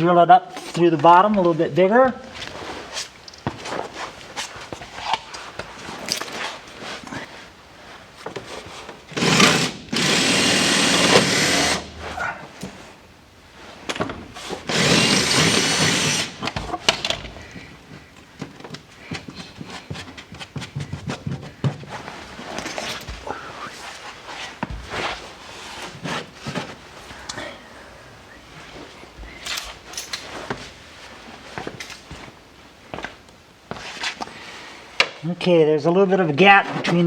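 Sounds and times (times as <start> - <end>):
electric drill running: 9.2 - 11.9, 14.7 - 16.3
handling clicks and knocks: 16.4 - 21.9.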